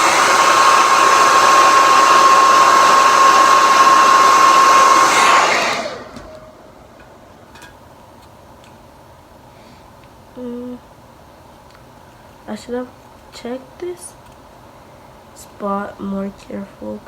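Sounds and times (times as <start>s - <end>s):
hair dryer running: 0.0s - 7.7s.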